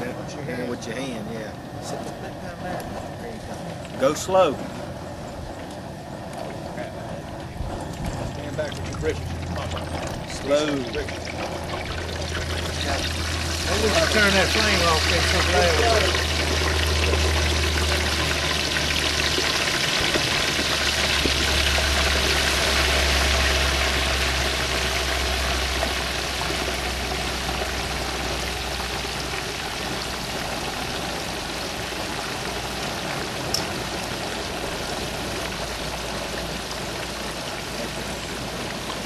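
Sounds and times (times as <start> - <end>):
hot oil bubbling and sizzling: 0.0 - 39.0
low rumble: 1.6 - 31.7.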